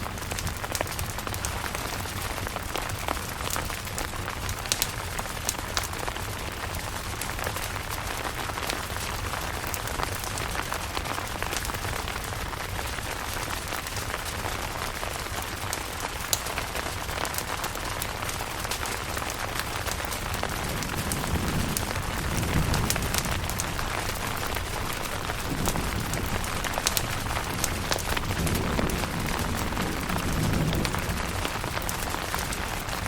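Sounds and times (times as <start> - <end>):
rain pattering on a tent: 0.0 - 33.0
distant thunder rumble: 20.0 - 33.0.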